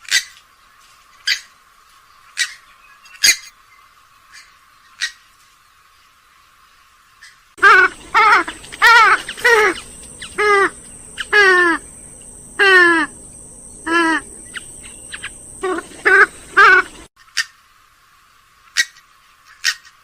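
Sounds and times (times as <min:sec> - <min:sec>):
swamphen calling: 0:07.6 - 0:17.1.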